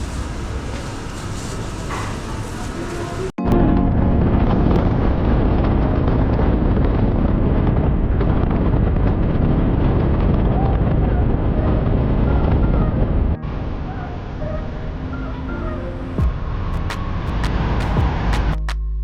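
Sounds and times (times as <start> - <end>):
wind buffeting microphone: 3.7 - 18.6.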